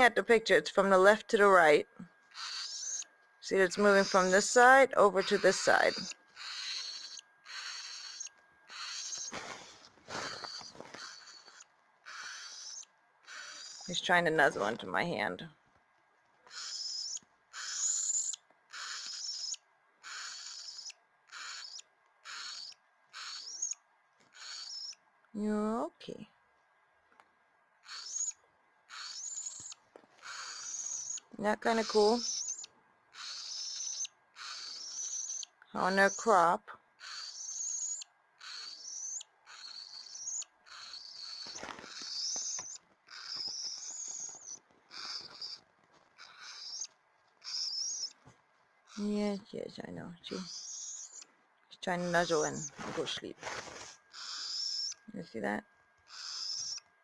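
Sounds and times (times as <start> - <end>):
chick raspy hissing calls: 2.3 - 14.0, 16.5 - 25.0, 27.8 - 45.6, 46.2 - 48.2, 50.3 - 51.3, 52.0 - 53.0, 53.8 - 55.0, 56.1 - 56.8.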